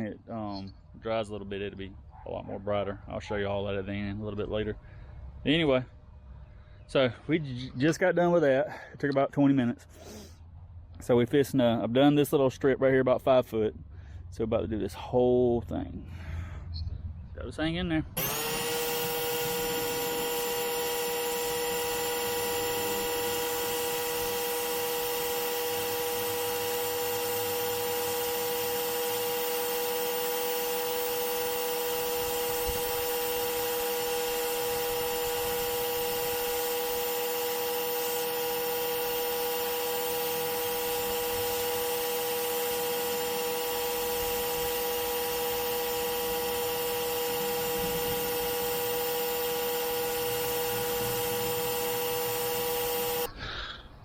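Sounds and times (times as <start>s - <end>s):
pressure washer whine: 18.2s - 53.4s.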